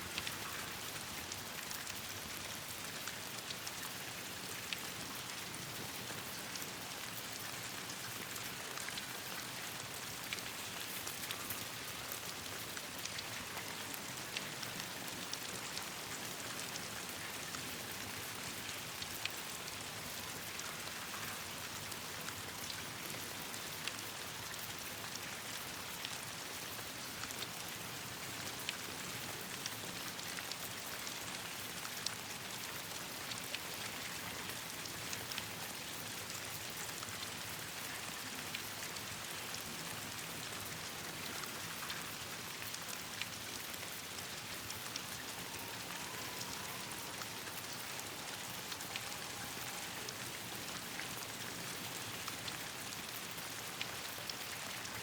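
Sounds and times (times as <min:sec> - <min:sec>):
rain falling on leaves: 0:00.0 - 0:55.0.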